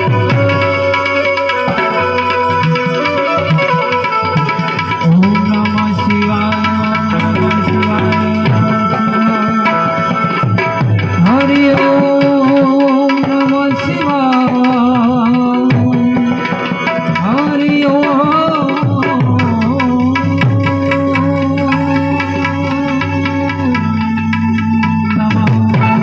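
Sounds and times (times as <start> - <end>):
harmonium notes: 0.0 - 26.0
tabla rhythm: 0.0 - 26.0
wavering melody line: 0.0 - 26.0.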